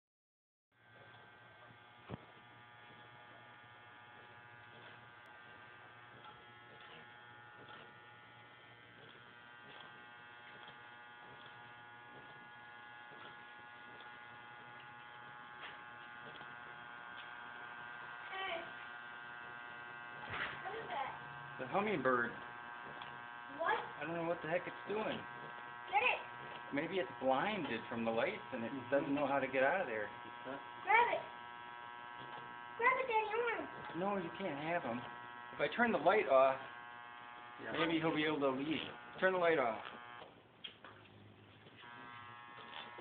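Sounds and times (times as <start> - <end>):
steady electrical buzz: 0.8 - 43.0.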